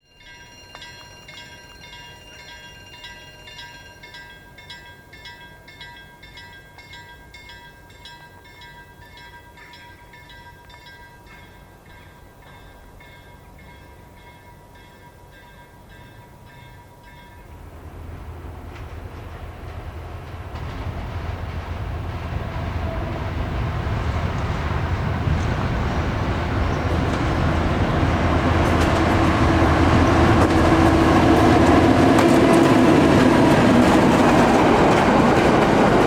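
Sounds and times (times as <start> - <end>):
level crossing warning bell: 0.0 - 17.6
diesel freight train rumble: 9.5 - 36.0.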